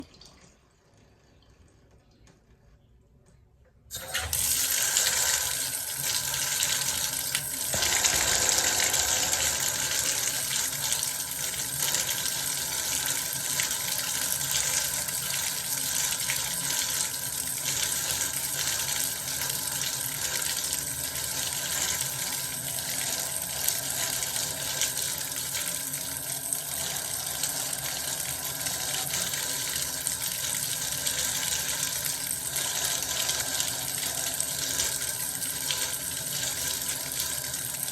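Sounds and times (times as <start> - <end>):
bathtub tap running: 3.9 - 12.7.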